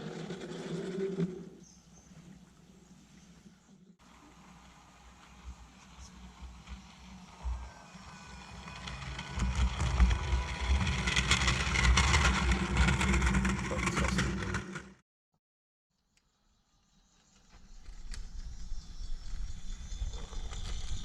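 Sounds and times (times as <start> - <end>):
wheels clicking over rails: 0.0 - 1.6, 4.3 - 15.0
model train running on track: 4.0 - 15.0.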